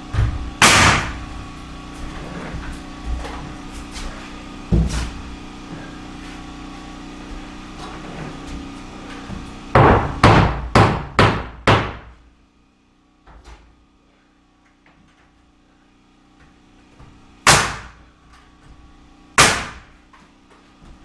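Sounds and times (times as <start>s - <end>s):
machine hum: 0.0s - 21.0s
nail gun firing: 0.6s - 1.3s, 9.8s - 12.1s, 17.5s - 18.0s, 19.4s - 20.0s.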